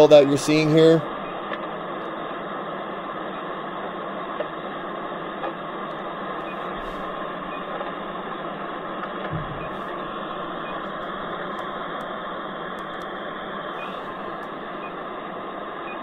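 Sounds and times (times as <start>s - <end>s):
leak detector beeping: 0.0s - 1.6s, 5.4s - 16.0s
steady background noise: 0.0s - 16.0s
low bump: 9.3s - 9.8s.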